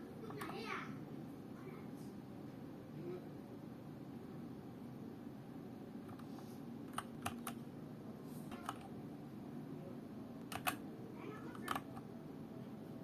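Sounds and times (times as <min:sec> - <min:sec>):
low steady hum: 0:00.0 - 0:13.0
mechanical keyboard key clicks: 0:06.9 - 0:07.6, 0:10.4 - 0:10.8, 0:11.5 - 0:12.0.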